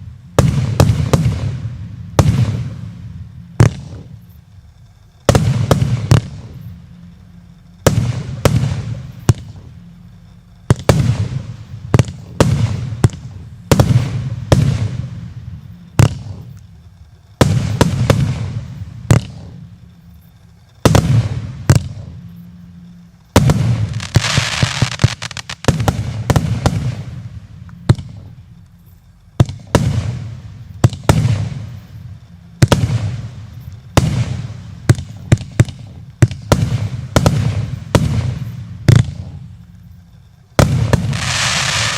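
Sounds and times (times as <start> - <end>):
fireworks shots and bursts: 0.0 - 7.0, 7.6 - 41.9
crackling firework hiss: 0.0 - 41.9.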